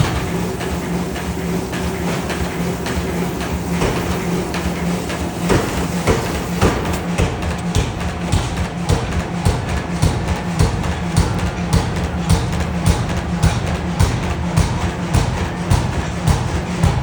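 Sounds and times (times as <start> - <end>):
factory machinery hum: 0.0 - 17.0.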